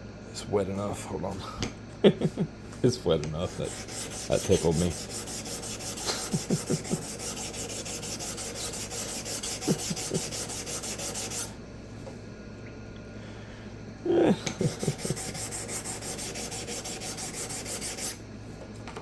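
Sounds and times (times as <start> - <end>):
stone rubbing on sharpening stone: 3.6 - 11.5, 14.6 - 18.2.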